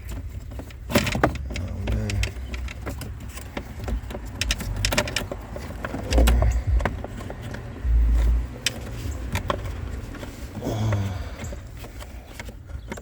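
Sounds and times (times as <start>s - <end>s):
plastic filter clicks and rustles: 0.0s - 13.0s
dull low thumps: 4.0s - 10.1s.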